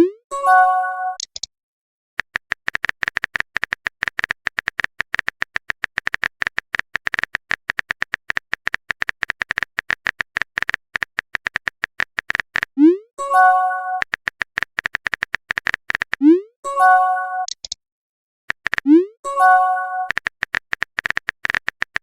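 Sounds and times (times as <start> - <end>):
phone keyboard typing clicks: 2.2 - 12.8, 14.0 - 16.2, 17.4 - 17.8, 18.5 - 22.0.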